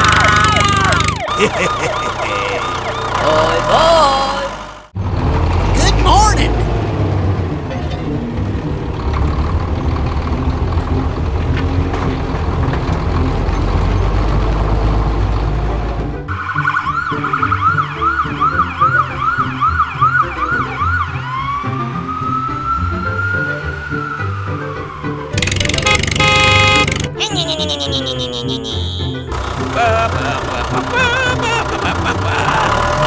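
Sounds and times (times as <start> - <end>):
siren yelp and wail: 0.0 - 4.9, 16.3 - 25.5
background music: 1.1 - 4.9, 5.5 - 33.0.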